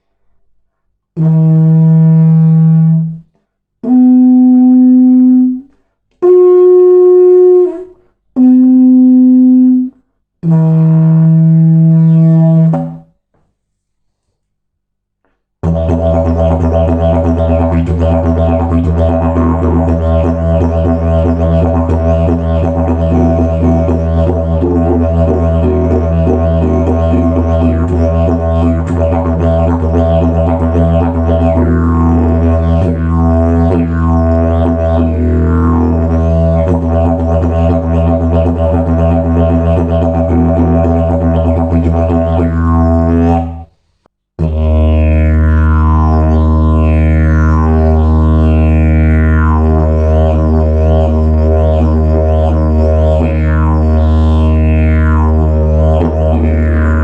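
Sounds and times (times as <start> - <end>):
didgeridoo drone: 15.6 - 43.6, 44.4 - 57.0.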